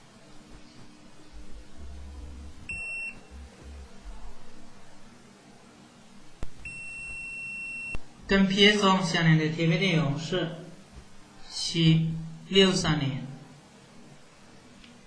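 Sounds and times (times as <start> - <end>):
multimeter beeping: 2.7 - 3.4, 6.6 - 8.0.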